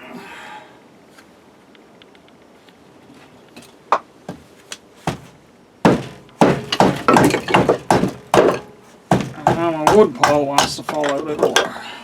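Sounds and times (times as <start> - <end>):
firewood knocking and tumbling: 3.9 - 11.8.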